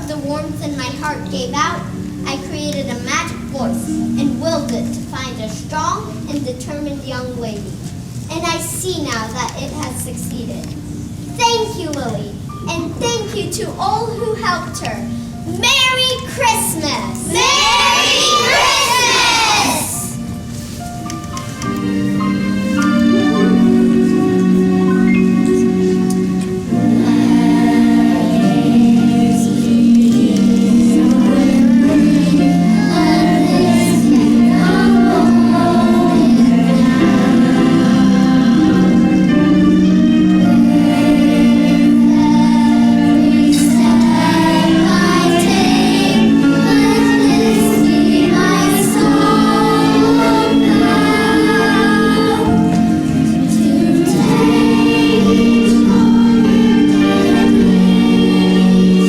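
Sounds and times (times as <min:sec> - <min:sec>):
instrumental accompaniment: 0:00.0 - 0:59.0
musical backing: 0:00.0 - 0:59.0
group of voices singing: 0:17.2 - 0:20.2, 0:26.7 - 0:59.0.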